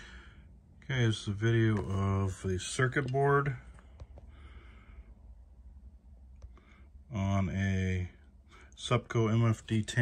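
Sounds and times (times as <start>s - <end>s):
faint breath: 0.0s - 0.7s, 3.8s - 5.4s, 6.4s - 7.0s
speech: 0.8s - 3.7s, 7.1s - 8.2s, 8.8s - 10.0s.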